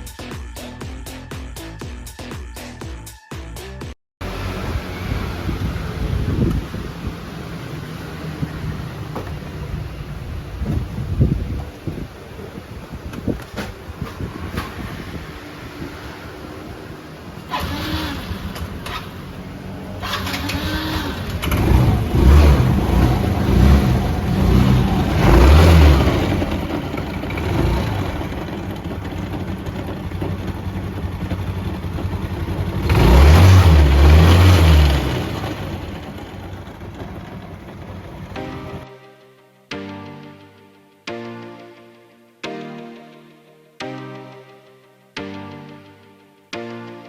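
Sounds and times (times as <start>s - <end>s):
scooter engine revving: 4.2s - 38.8s.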